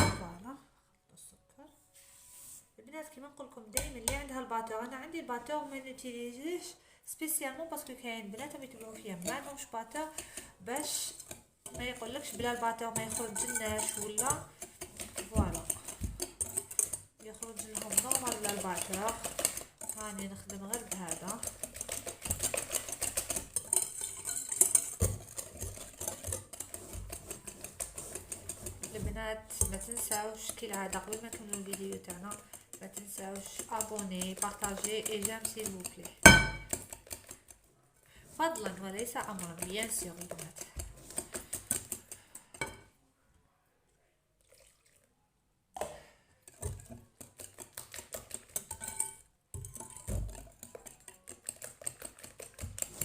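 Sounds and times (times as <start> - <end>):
whisk clicking and scraping bowl: 7.8 - 42.8, 46.4 - 53.0.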